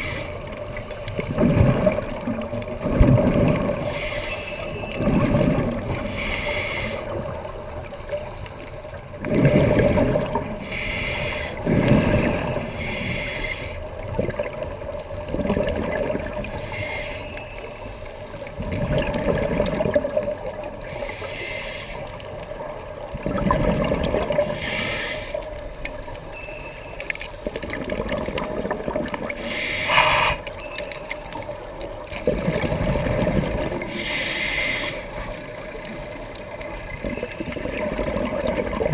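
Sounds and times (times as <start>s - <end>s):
hissing regulator inhale: 0.0s - 1.0s, 3.8s - 4.8s, 5.9s - 7.3s, 10.6s - 13.9s, 16.5s - 17.4s, 20.8s - 22.2s, 24.4s - 25.5s, 29.4s - 30.5s, 33.9s - 35.7s
gurgling exhaled bubbles: 0.0s - 16.8s, 18.2s - 21.0s, 22.0s - 26.5s, 27.4s - 38.9s.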